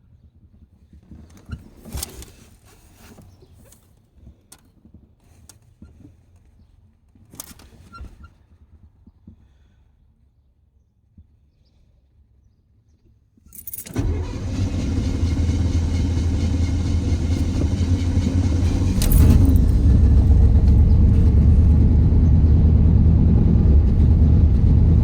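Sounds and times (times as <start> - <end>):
car engine starting and running: 13.8 - 25.0.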